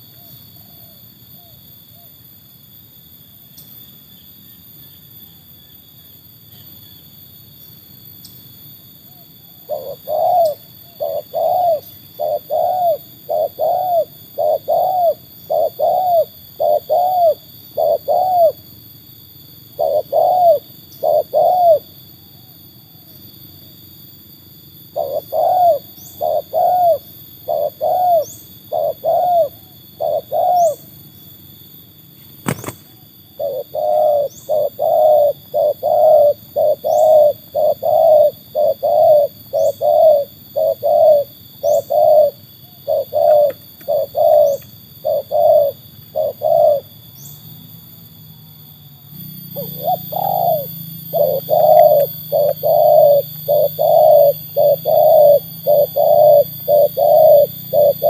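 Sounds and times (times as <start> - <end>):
dove cooing: 9.1 - 18.8, 19.6 - 23.2, 24.9 - 31.0, 32.4 - 47.4, 49.1 - 58.0.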